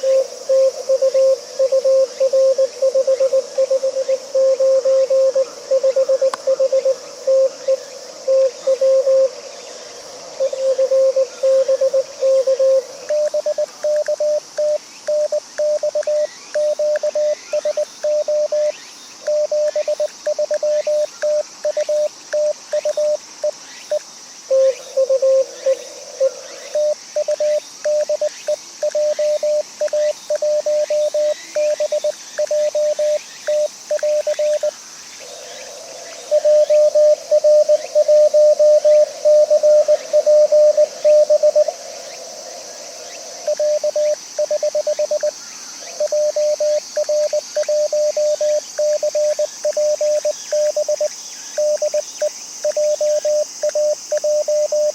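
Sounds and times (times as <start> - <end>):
morse code beeps: 13.1 - 18.7, 46.0 - 52.0
lower-pitched morse signal: 36.3 - 41.7, 43.4 - 45.3, 46.0 - 54.9.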